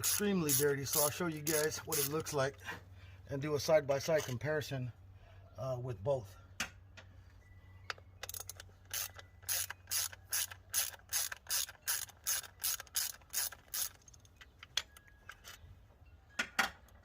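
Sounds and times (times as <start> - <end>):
ratchet wrench clicking: 0.0 - 2.3, 8.2 - 15.6.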